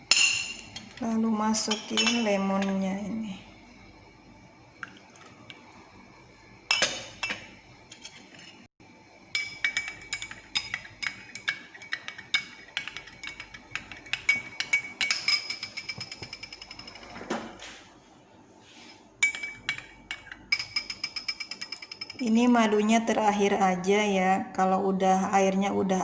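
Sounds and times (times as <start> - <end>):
spoon clinking against container: 0.0 - 1.0, 1.6 - 2.8, 6.7 - 8.1, 9.4 - 17.1, 19.2 - 22.2.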